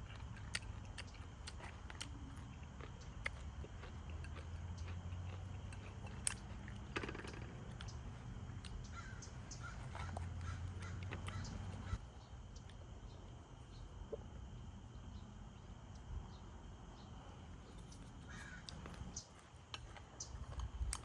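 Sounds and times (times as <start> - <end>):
low steady hum: 0.0 - 21.0
birds calling: 4.6 - 14.0, 15.0 - 20.5.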